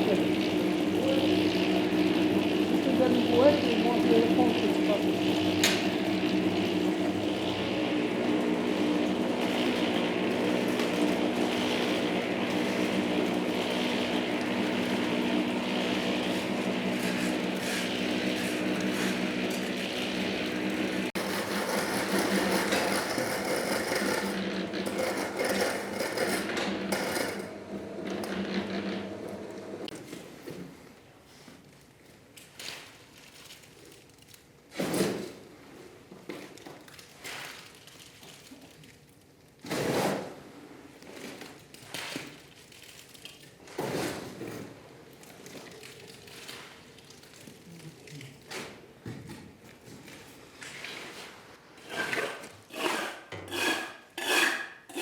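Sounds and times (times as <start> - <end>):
electric concrete mixer running: 0.0 - 29.9.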